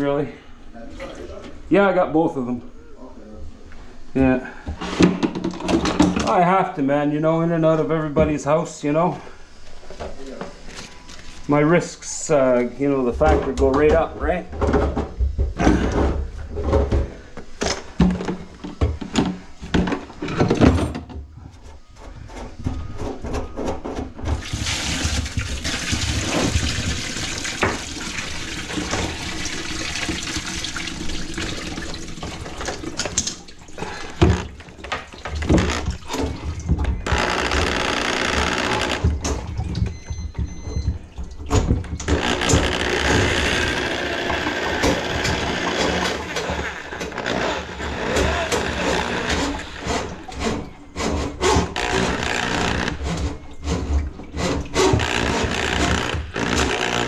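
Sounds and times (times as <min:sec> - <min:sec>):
water running into sink: 0:24.4 - 0:50.6
knocks and clatter: 0:31.7 - 0:57.0.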